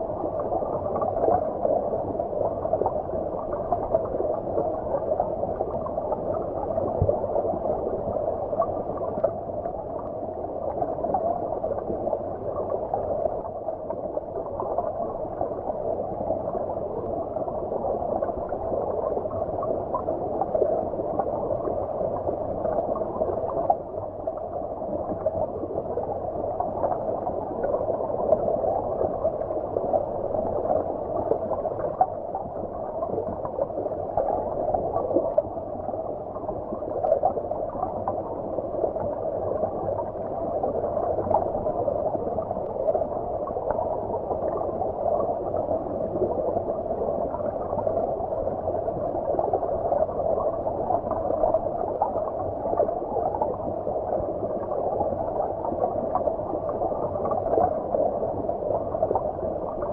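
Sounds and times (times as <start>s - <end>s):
muffled underwater stream bubbling: 0.0s - 59.9s.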